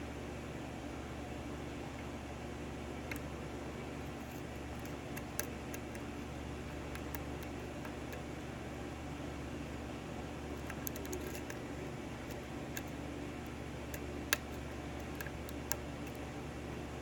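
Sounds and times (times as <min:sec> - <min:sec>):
low fan hum: 0:00.0 - 0:17.0
lock picks clicking: 0:04.3 - 0:06.0, 0:10.6 - 0:11.6, 0:13.9 - 0:16.2.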